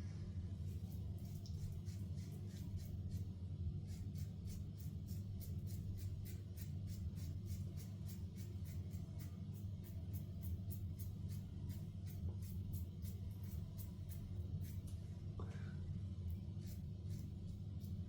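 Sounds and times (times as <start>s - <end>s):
steady low hum: 0.0s - 18.0s
razor scraping stubble: 3.9s - 14.9s, 16.6s - 18.0s.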